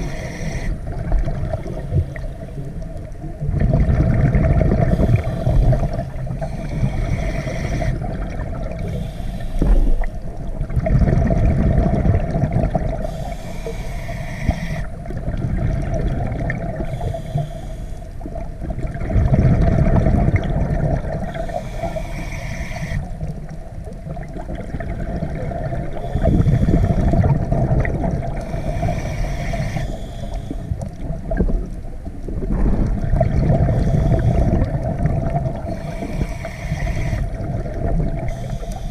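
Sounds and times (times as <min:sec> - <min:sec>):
regulator hissing inhalation: 0:00.0 - 0:00.9, 0:04.9 - 0:08.1, 0:08.8 - 0:10.1, 0:13.0 - 0:15.0, 0:16.8 - 0:18.1, 0:21.3 - 0:23.3, 0:25.9 - 0:27.2, 0:28.4 - 0:30.8, 0:33.7 - 0:34.8, 0:35.6 - 0:37.5, 0:38.2 - 0:38.9
exhaled bubbles gushing: 0:00.0 - 0:09.0, 0:09.6 - 0:13.4, 0:14.7 - 0:17.1, 0:18.2 - 0:22.0, 0:22.8 - 0:29.8, 0:30.6 - 0:38.9
steady hum: 0:00.0 - 0:38.9.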